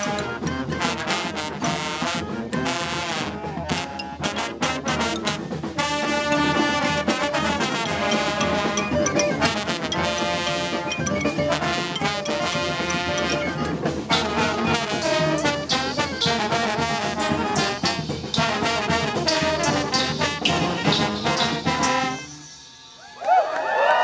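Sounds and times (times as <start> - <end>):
trombones and trumpets: 0.0 - 23.0
steady drum hits: 13.9 - 22.2.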